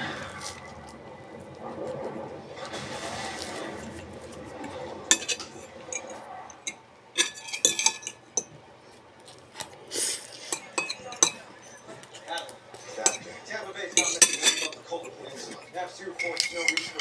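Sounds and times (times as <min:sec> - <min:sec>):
low background noise: 0:00.0 - 0:17.0
utensils clinking on a dish: 0:04.6 - 0:08.6, 0:10.4 - 0:17.0.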